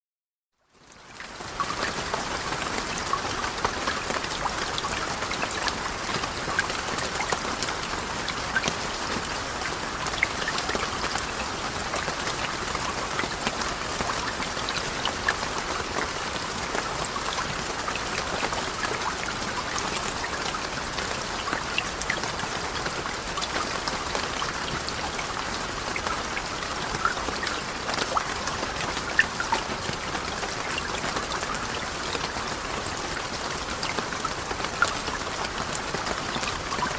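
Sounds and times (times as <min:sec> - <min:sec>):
rain-like falling water hiss: 0:00.6 - 0:36.9.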